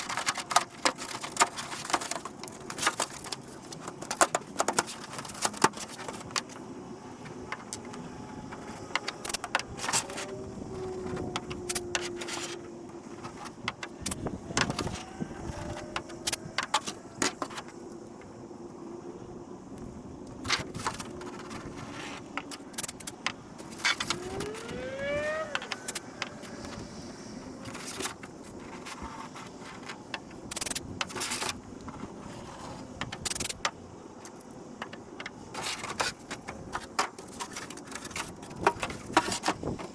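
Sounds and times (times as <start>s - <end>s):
plastic parts and tools clattering: 0.0s - 6.6s, 7.2s - 17.8s, 20.4s - 26.9s, 27.6s - 39.9s
pitch-sliding tones: 24.0s - 26.6s.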